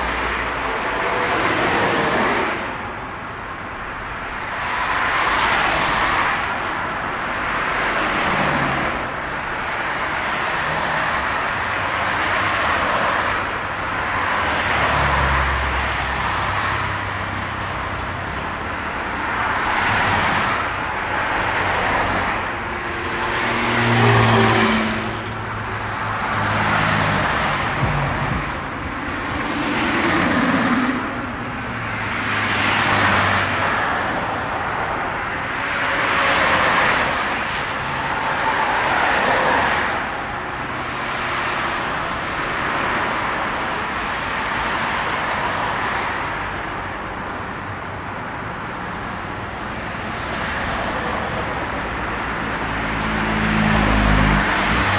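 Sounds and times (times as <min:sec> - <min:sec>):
cars passing: 0:00.0 - 0:54.9.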